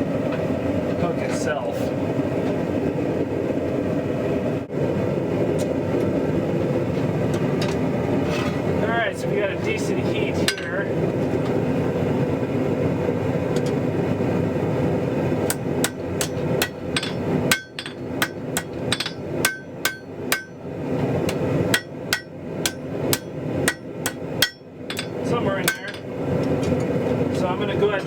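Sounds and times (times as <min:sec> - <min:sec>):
hammer ringing on anvil: 0:15.8 - 0:20.6, 0:21.7 - 0:26.1.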